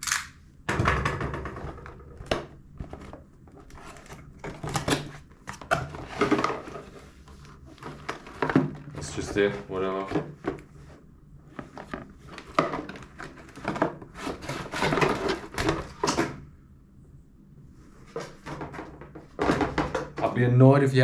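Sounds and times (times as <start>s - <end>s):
packaging scraping and rustling: 2.8s - 10.9s, 11.5s - 16.2s.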